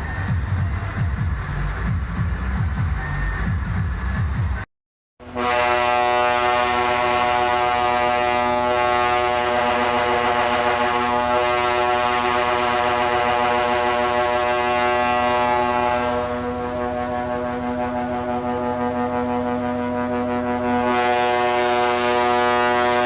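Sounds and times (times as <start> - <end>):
fairground ride horn blast: 5.2 - 23.0.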